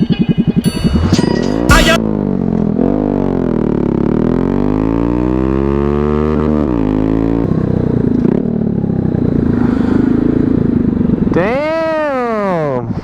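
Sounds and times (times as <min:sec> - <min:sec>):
motorcycle engine accelerating: 0:00.0 - 0:13.0.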